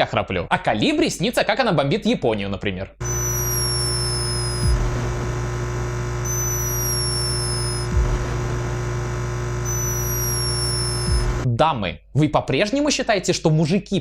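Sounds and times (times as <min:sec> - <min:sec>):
hummingbird snoring whistle: 0:03.0 - 0:04.7, 0:06.2 - 0:07.9, 0:09.6 - 0:11.2
steady electrical hum: 0:03.0 - 0:11.4.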